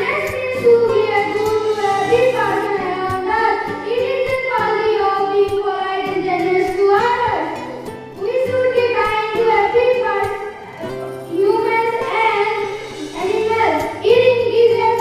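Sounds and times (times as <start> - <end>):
instrumental accompaniment: 0.0 - 15.0
children singing: 0.6 - 3.4.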